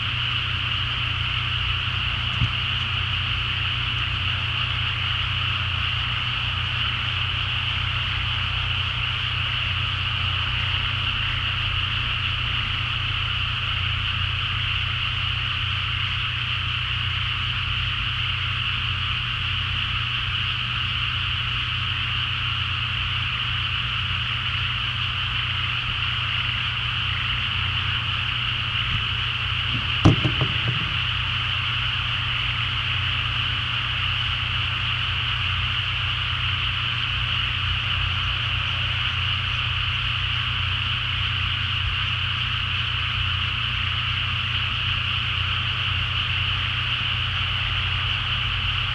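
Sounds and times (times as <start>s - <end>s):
low steady hum: 0.0s - 48.9s
brief knock: 29.7s - 31.2s.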